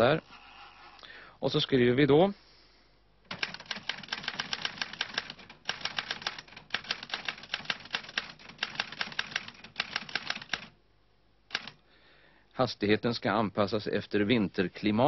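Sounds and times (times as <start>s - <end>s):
typewriter keys clacking: 3.3s - 10.7s, 11.5s - 11.8s.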